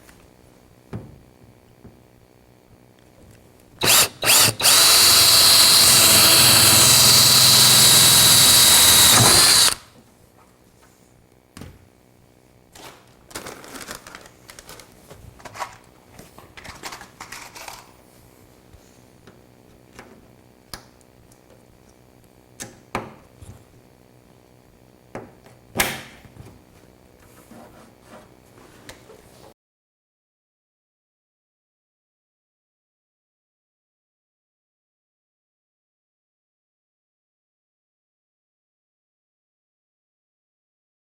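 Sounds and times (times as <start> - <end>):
power drill whine: 3.8 - 9.8
faint clicks and handling noises: 12.8 - 18.0.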